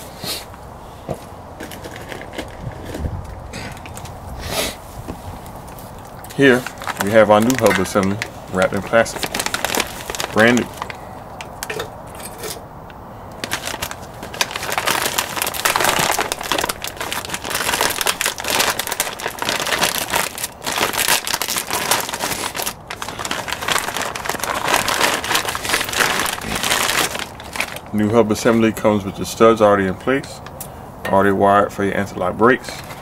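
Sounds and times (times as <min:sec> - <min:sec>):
plastic wrapping crinkling: 0:05.4 - 0:11.9, 0:13.3 - 0:28.7.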